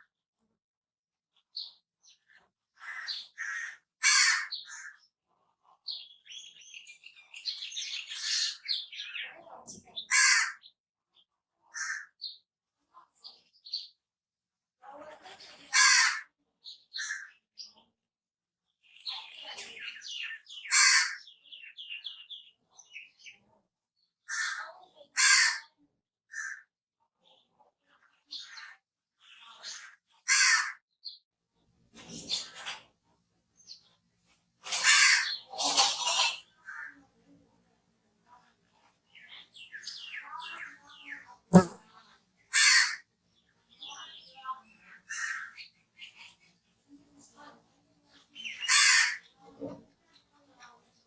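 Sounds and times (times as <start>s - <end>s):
crows cawing: 2.8s - 5.0s, 10.1s - 10.7s, 11.7s - 12.2s, 15.7s - 16.3s, 17.0s - 17.3s, 20.6s - 21.3s, 24.3s - 25.7s, 26.3s - 26.7s, 30.3s - 30.8s, 34.7s - 37.0s, 42.5s - 43.1s, 45.1s - 45.6s, 48.6s - 49.3s.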